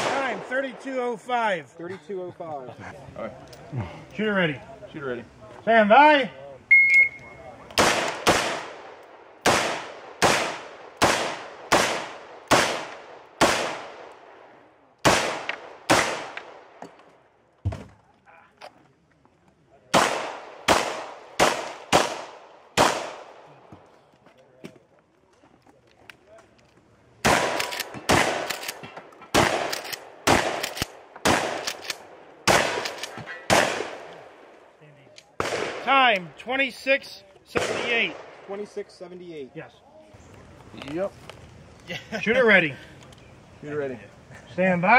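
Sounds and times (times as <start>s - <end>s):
echoing gunshots: 0.0s - 1.2s, 7.8s - 16.8s, 19.9s - 23.6s, 27.2s - 34.5s, 35.4s - 36.1s, 37.5s - 38.7s.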